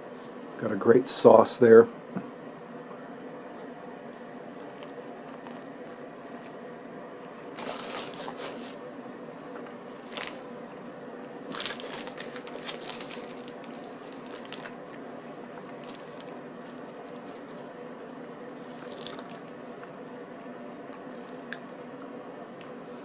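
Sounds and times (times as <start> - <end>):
steady low hum: 0.0 - 23.0
person chewing: 3.6 - 8.4, 18.5 - 21.8
crusty bread and wrapper crackling: 7.4 - 8.8, 9.9 - 10.6, 11.2 - 19.9.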